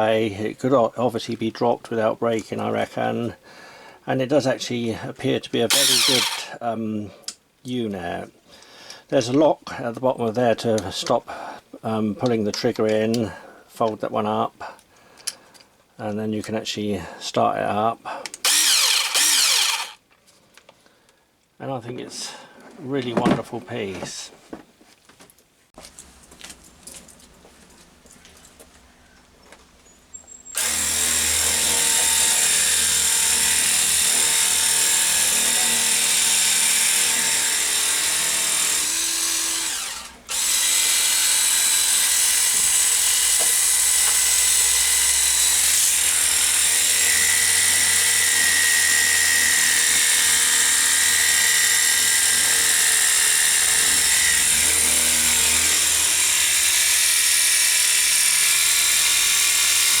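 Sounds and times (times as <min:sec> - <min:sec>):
pressure washer motor whining: 0:05.7 - 0:06.5, 0:18.5 - 0:20.0.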